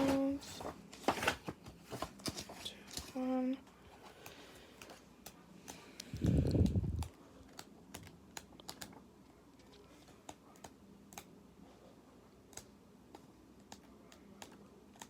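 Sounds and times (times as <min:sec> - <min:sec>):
paper pages being leafed through: 0:00.0 - 0:03.4.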